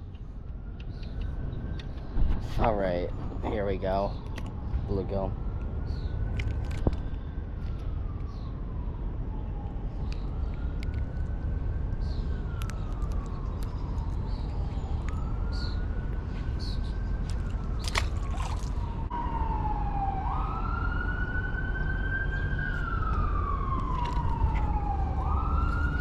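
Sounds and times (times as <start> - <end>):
emergency vehicle siren wailing: 2.7 - 26.0.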